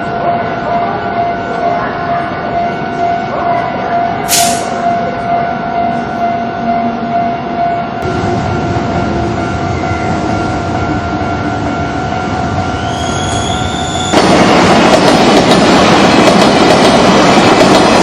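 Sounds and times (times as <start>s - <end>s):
level-crossing warning bell: 0.0s - 18.0s
short hiss: 4.3s - 4.8s
train rumble: 7.9s - 18.0s.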